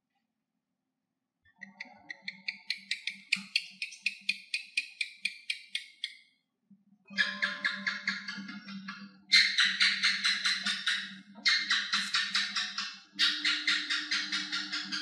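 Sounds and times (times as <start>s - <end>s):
gecko chirping clicks: 1.6s - 6.2s.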